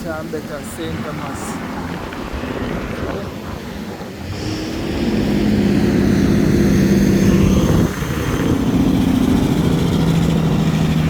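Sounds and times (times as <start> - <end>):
vehicle engine passing by: 0.0 - 11.0.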